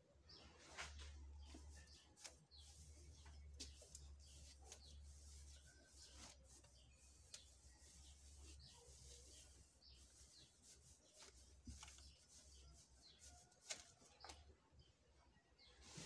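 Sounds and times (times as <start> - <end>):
faint bird chirps: 0.0 - 16.0.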